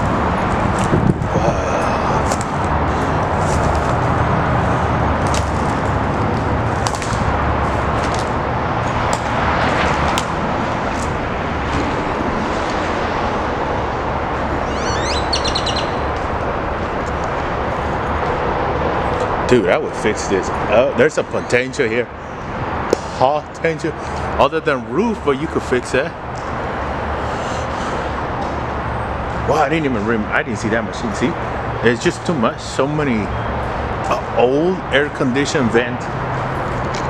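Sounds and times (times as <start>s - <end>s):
bird chirps: 14.6s - 16.2s.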